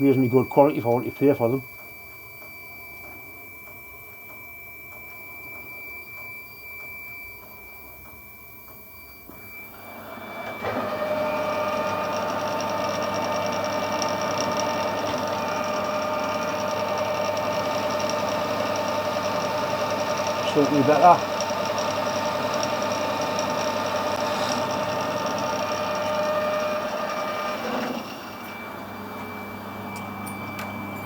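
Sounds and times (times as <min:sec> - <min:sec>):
rough metal cutting with whine: 0:00.0 - 0:31.0
metal lathe running: 0:09.4 - 0:31.0.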